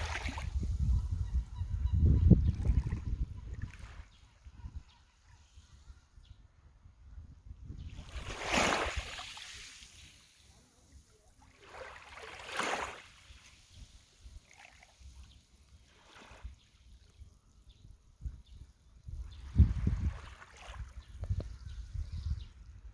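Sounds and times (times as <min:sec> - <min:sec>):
small waves washing onto shore: 0:00.0 - 0:00.7, 0:08.0 - 0:16.6.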